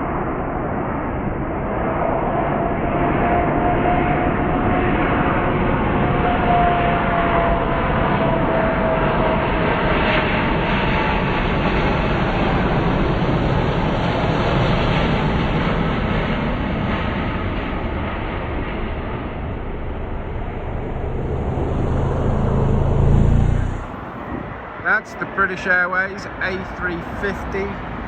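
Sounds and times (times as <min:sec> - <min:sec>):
jet airliner roar: 0:00.0 - 0:28.0.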